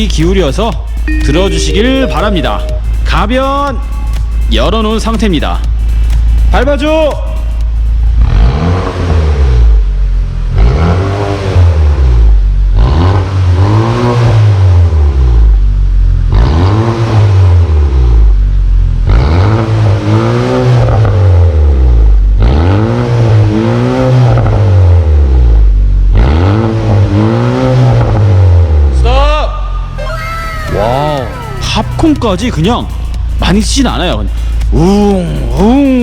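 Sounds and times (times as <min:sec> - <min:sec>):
car engine revving: 0:02.8 - 0:29.0.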